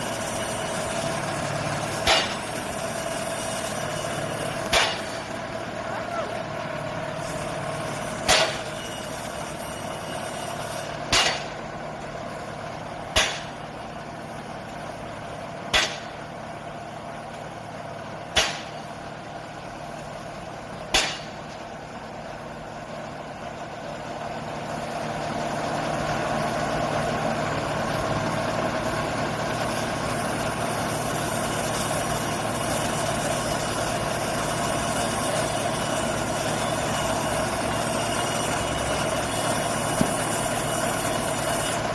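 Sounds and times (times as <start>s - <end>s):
drilling rig hammer striking: 0.0s - 5.6s, 7.0s - 13.8s, 14.7s - 16.4s, 18.2s - 19.0s, 19.8s - 21.7s, 28.8s - 41.9s
rig engine humming: 0.0s - 41.9s.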